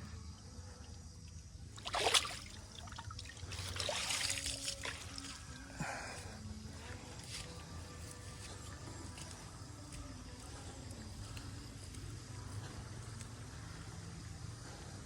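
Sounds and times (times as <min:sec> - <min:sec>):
low outdoor rumble: 0:05.0 - 0:15.0.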